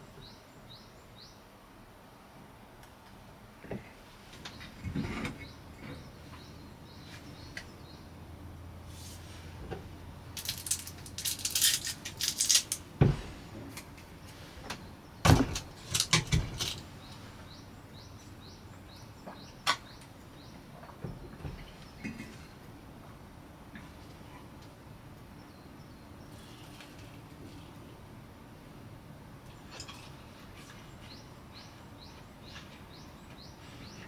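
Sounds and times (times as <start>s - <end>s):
rustling of handled objects: 10.2s - 17.2s.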